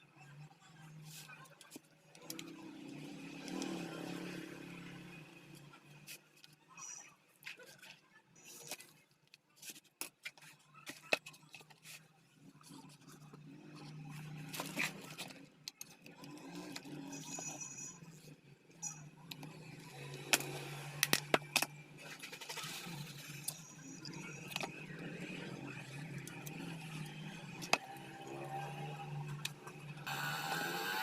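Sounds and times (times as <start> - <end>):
tools clicking and scraping: 12.7 - 24.8.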